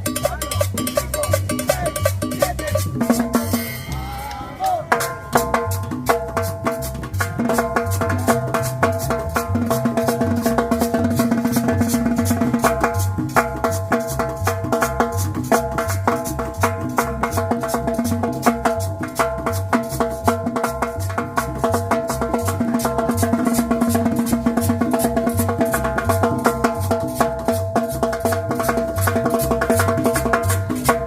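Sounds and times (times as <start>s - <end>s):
bass line: 0.0s - 31.0s
drums: 0.0s - 31.0s
maracas: 0.0s - 31.0s.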